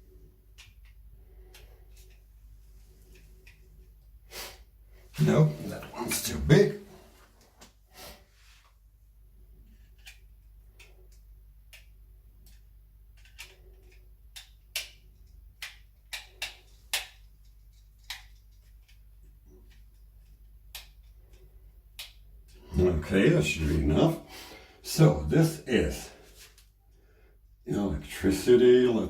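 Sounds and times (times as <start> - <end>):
screwdriver clicking and scraping: 9.8 - 10.9.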